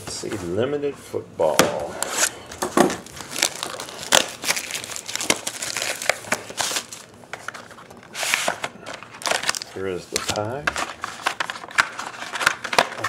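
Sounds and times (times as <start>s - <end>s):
plastic wrapping crinkling and tearing: 2.0s - 13.0s.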